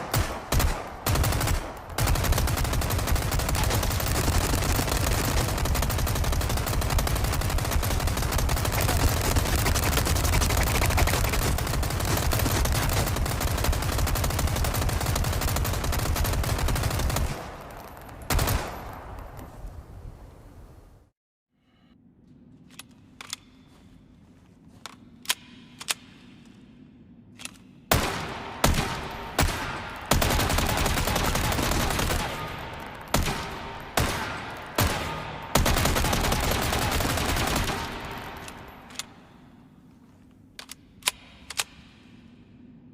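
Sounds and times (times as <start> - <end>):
submachine gun firing: 0.0 - 19.0, 27.9 - 39.1.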